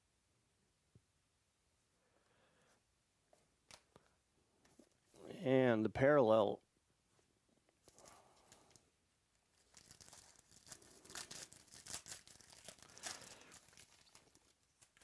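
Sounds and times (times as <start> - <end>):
packaging crinkling and rustling: 9.4 - 15.0.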